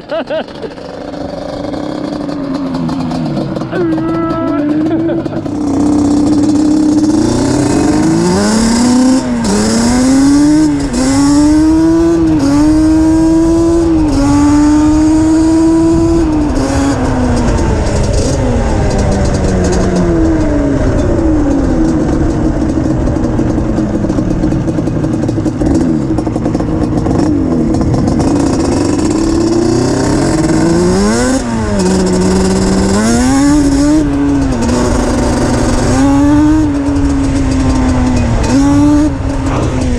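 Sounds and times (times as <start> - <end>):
two-stroke engine accelerating: 0.0 - 39.9.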